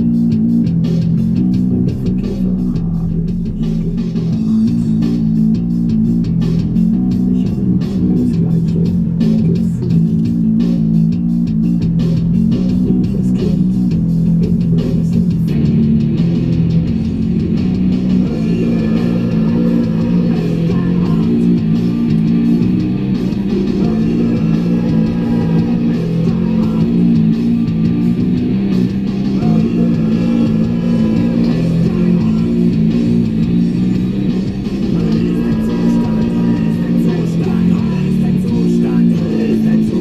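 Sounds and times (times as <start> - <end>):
rock music with guitar and bass: 0.0 - 40.0.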